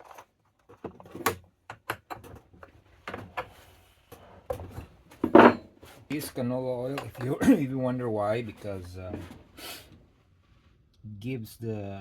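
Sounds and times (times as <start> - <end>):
handling knocks and clicks: 0.0 - 3.6, 6.8 - 7.4.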